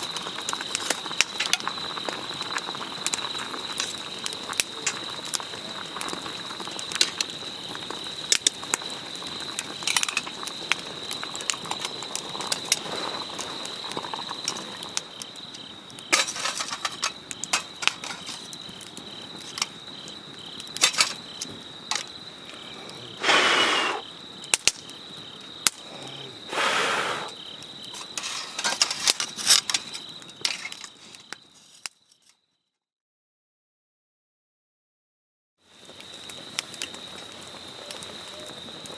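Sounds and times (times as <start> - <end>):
campfire crackling and popping: 0.0 - 32.0, 35.7 - 38.9
short hissing rushes: 22.6 - 24.1, 25.9 - 27.4.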